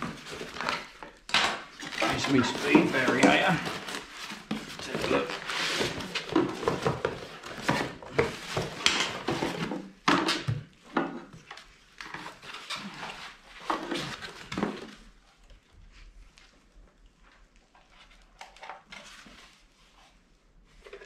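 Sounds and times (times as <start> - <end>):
packaging rustling: 0.0 - 10.0.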